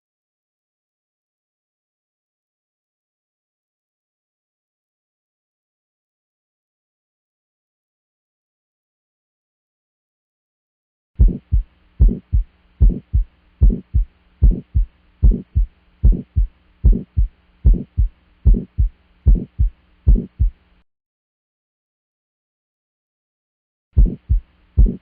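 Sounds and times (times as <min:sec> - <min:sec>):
heartbeat through stethoscope: 0:11.2 - 0:20.6, 0:24.0 - 0:25.0
faint steady hum: 0:11.2 - 0:20.8, 0:24.0 - 0:25.0.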